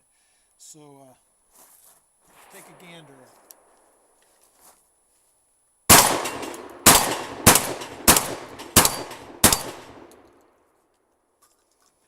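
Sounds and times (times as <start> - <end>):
shotgun shots echoing: 2.3 - 4.0, 5.9 - 10.4.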